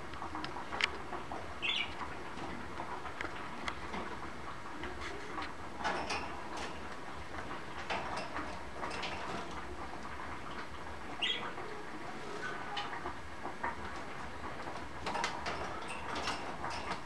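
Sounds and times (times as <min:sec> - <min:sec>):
budgerigars chirping and chattering: 0:01.6 - 0:02.0, 0:11.2 - 0:11.6.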